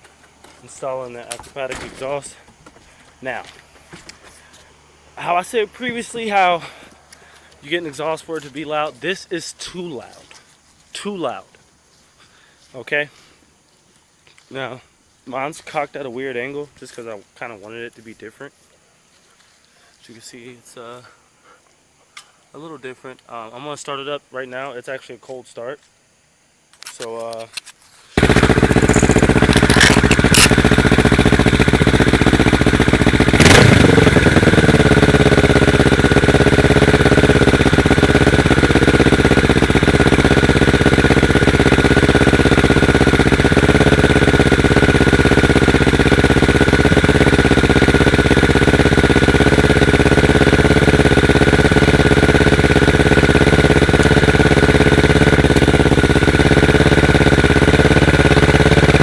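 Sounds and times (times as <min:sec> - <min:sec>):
motorcycle engine idling loudly: 0:28.2 - 0:59.0.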